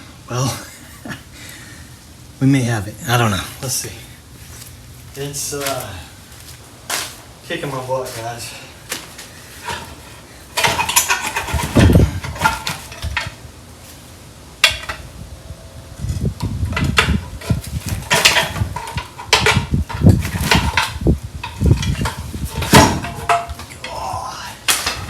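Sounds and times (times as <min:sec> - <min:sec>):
hand tools clanking on metal: 0:06.9 - 0:13.4, 0:16.6 - 0:25.0.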